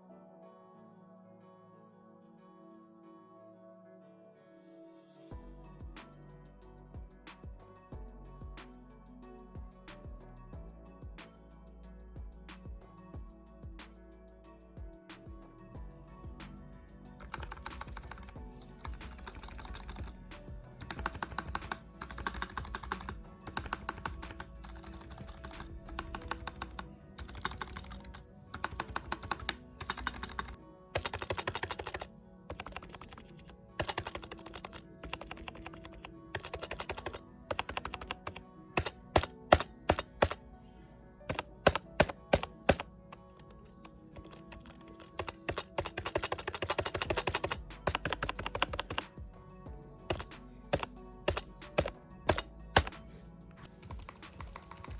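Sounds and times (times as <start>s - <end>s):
keyboard typing: 17.2s - 40.4s, 41.3s - 49.2s, 50.1s - 53.0s, 53.6s - 54.9s.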